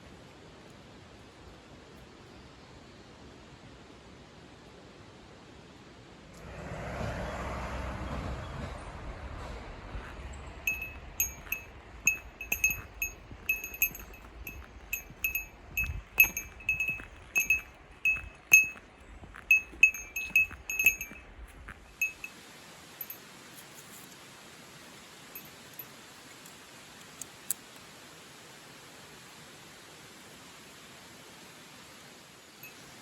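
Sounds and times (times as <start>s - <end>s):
small metal bell ringing: 10.7s - 22.4s, 23.0s - 23.2s, 25.4s - 25.9s, 32.6s - 33.0s.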